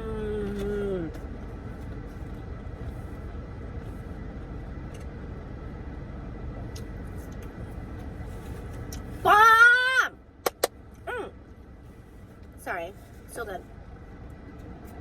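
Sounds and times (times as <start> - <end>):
car air conditioning hum: 0.0 - 15.0
woman exclaiming: 9.2 - 10.2.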